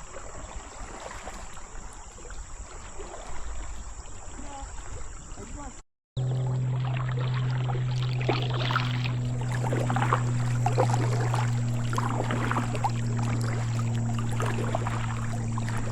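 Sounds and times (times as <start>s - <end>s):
paddle water splashing: 0.0s - 15.9s
steady low hum: 6.2s - 15.9s.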